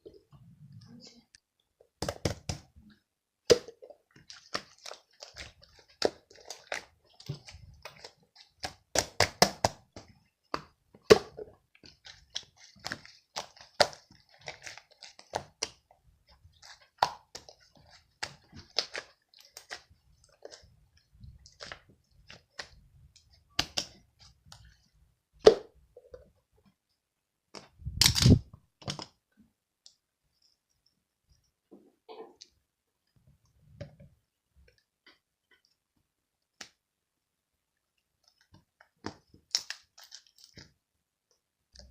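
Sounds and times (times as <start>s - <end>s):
slime squishing with sticky pops: 1.9s - 24.8s, 38.1s - 40.8s.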